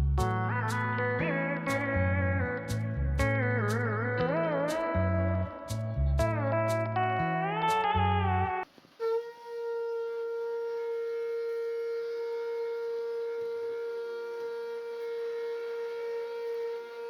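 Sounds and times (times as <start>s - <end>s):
guitar music: 0.0s - 8.6s
wind instrument long note: 9.0s - 17.0s.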